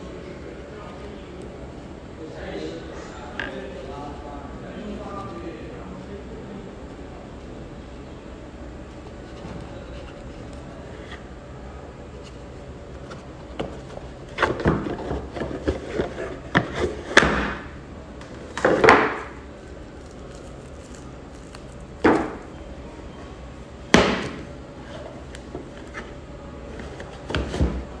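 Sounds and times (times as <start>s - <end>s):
packaging rustle: 20.0s - 22.0s.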